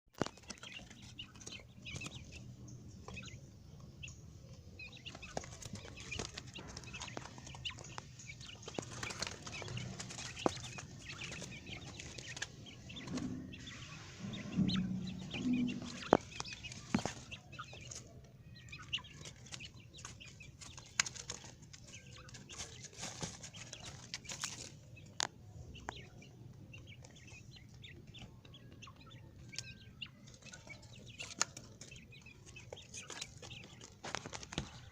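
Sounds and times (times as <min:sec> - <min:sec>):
quail calling: 0:04.0 - 0:24.7
scratchy rustles: 0:05.0 - 0:18.1, 0:18.8 - 0:25.0, 0:30.2 - 0:34.9.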